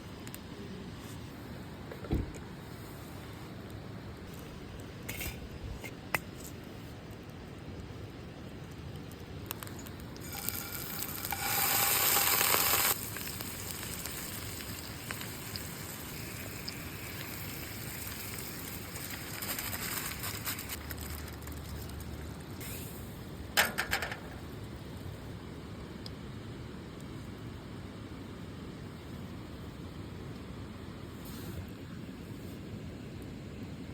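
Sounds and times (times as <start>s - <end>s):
crackling: 8.4s - 22.7s
food sizzling in a pan: 9.6s - 21.6s.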